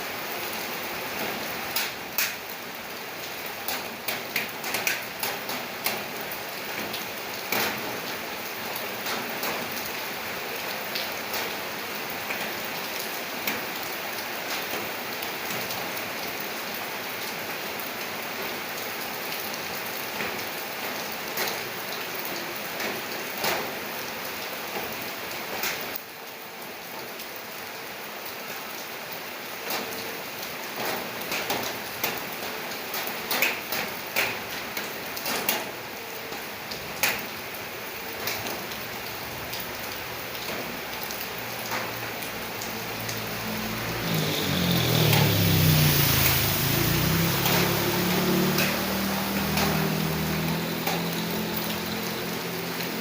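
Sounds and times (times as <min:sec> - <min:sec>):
steady rain: 0:00.0 - 0:53.0
raindrops tapping on surface: 0:01.0 - 0:53.0.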